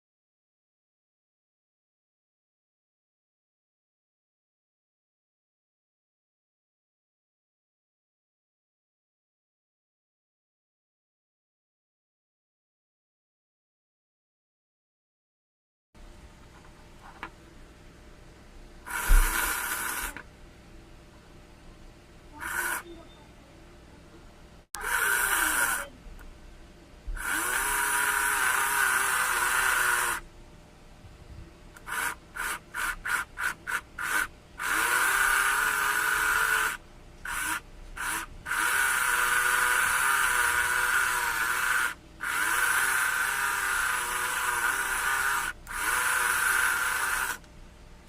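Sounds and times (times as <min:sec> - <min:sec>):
small motor whining: 0:18.8 - 0:20.2, 0:22.3 - 0:23.0, 0:24.8 - 0:25.9, 0:27.2 - 0:30.2, 0:31.8 - 0:47.5.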